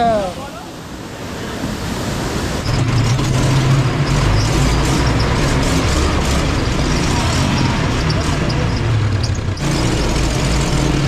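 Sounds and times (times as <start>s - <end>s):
rushing noise: 0.0s - 11.0s
atv engine running: 2.7s - 11.0s.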